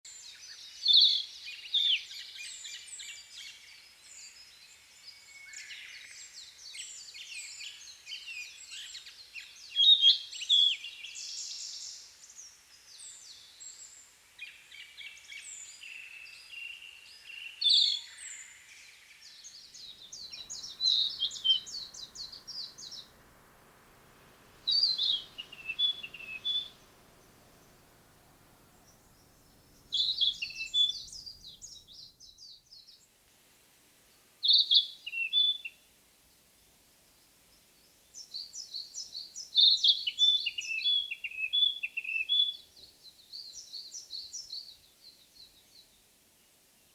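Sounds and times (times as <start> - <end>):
bird singing whistled phrases: 19.8 - 23.2, 24.6 - 32.6, 34.5 - 35.8, 39.6 - 42.6.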